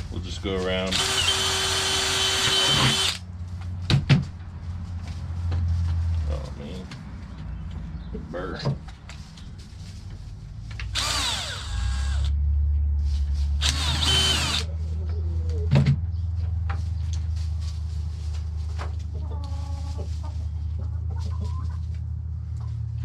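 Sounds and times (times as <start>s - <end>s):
power drill drilling: 0.9s - 3.2s, 11.0s - 12.3s, 13.6s - 14.7s
chickens clucking: 18.4s - 22.8s.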